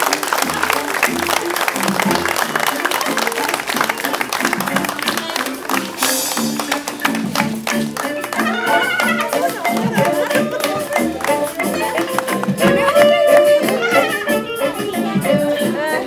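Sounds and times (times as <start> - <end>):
rhythmic band accompaniment: 0.0 - 16.0
wind instrument melody: 0.0 - 16.0.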